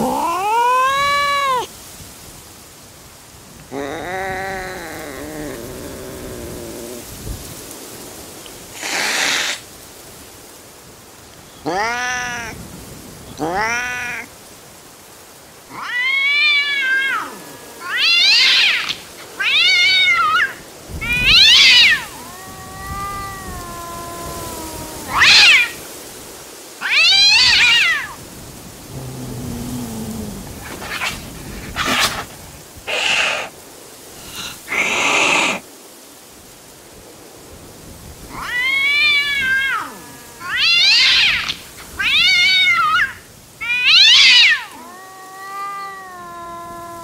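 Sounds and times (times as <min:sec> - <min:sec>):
cat hissing: 0:00.0 - 0:01.7, 0:03.6 - 0:07.5, 0:08.6 - 0:09.8, 0:11.6 - 0:12.6, 0:13.3 - 0:14.4, 0:15.6 - 0:26.0, 0:26.8 - 0:35.7, 0:38.2 - 0:47.0
cat yowling: 0:00.0 - 0:01.7, 0:03.7 - 0:07.1, 0:08.8 - 0:09.6, 0:11.6 - 0:12.6, 0:13.4 - 0:14.3, 0:15.7 - 0:25.9, 0:26.8 - 0:28.2, 0:28.9 - 0:32.3, 0:32.9 - 0:33.5, 0:34.2 - 0:35.6, 0:38.2 - 0:47.0.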